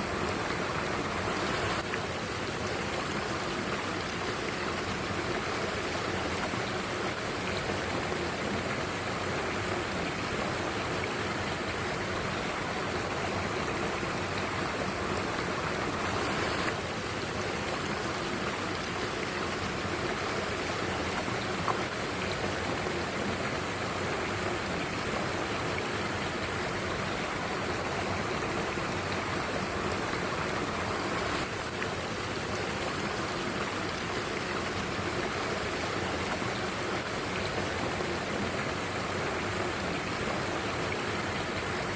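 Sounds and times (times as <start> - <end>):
stream water rushing: 0.0 - 41.9.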